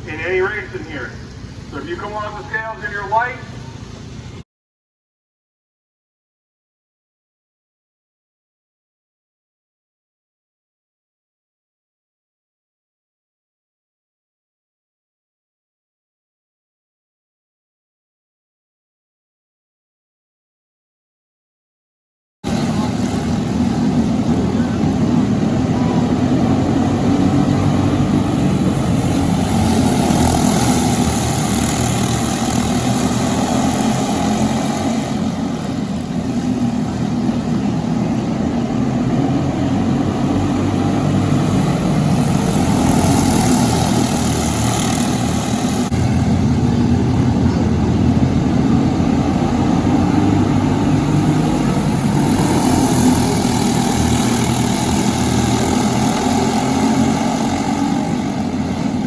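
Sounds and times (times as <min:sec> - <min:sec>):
racing kart engines droning: 0:00.0 - 0:04.4, 0:22.5 - 0:59.0.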